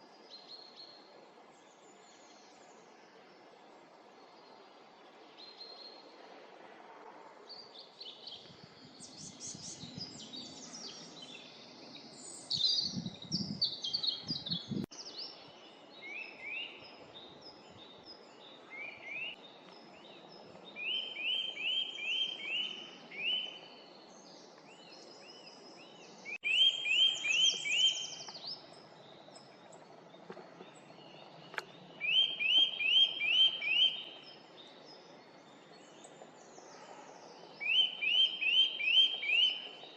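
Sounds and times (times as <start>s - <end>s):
birds twittering: 16.0s - 39.9s.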